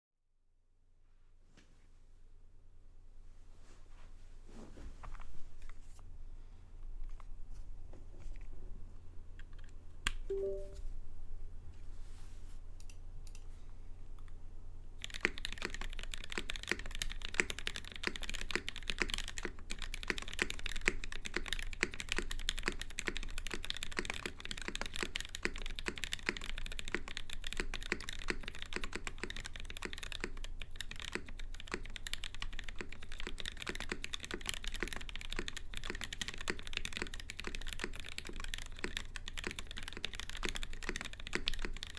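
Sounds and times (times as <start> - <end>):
low steady hum: 1.8 - 14.9
typing on mechanical keyboard: 15.0 - 41.9.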